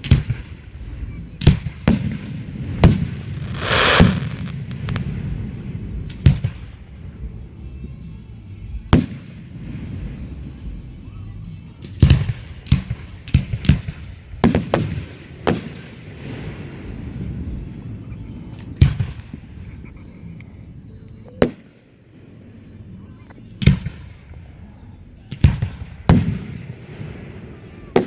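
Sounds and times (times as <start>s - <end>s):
fireworks bangs: 2.7s - 6.0s
steady low rumble: 3.2s - 5.8s.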